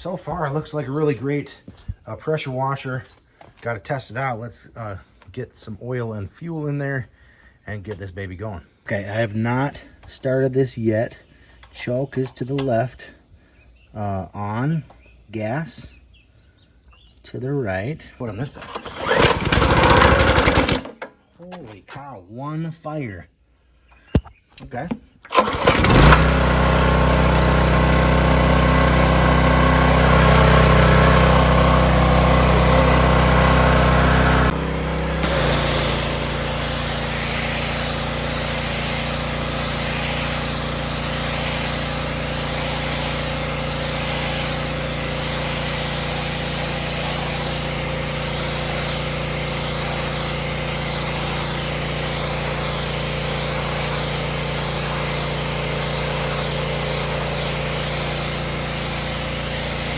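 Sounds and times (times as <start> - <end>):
pressure washer engine running: 18.5 - 21.0, 25.3 - 59.9
water spray hiss: 35.2 - 59.9.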